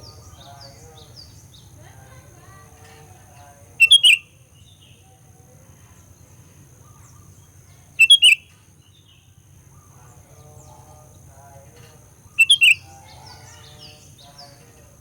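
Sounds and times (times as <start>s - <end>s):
softer bird chatter: 0.0s - 15.0s
bulbul call phrases: 3.7s - 4.3s, 7.9s - 8.4s, 12.1s - 14.5s.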